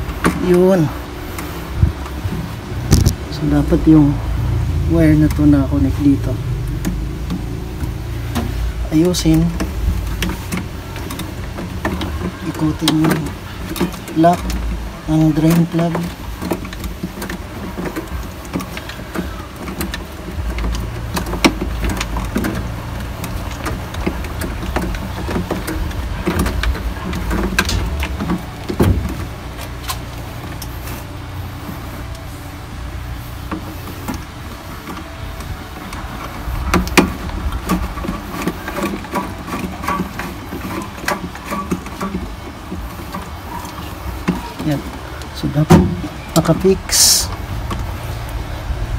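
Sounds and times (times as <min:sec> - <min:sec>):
steady low rumble: 0:00.0 - 0:39.8.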